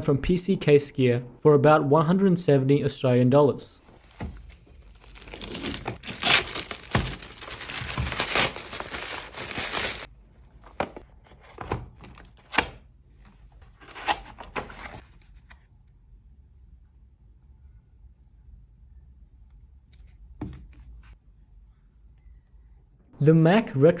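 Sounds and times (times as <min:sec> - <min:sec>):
packaging tearing and crinkling: 0:04.0 - 0:10.1.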